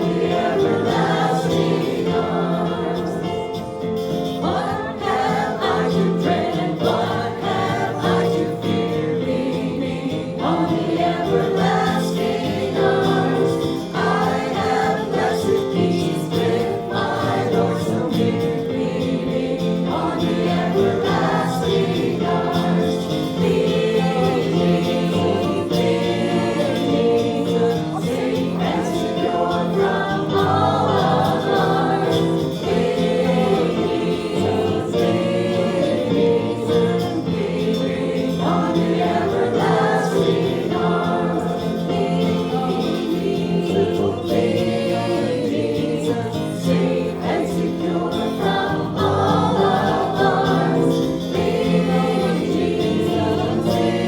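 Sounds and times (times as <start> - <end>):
congregation singing a hymn: 0.0 - 54.0.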